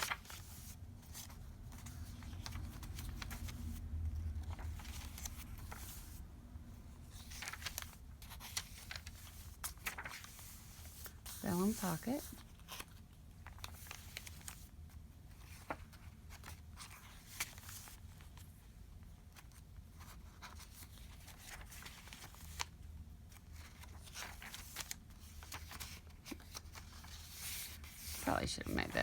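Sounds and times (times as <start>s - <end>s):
paper rustling: 0.0s - 6.2s, 7.0s - 18.6s, 19.2s - 29.0s
paper crinkles: 7.1s - 14.7s, 23.4s - 29.0s.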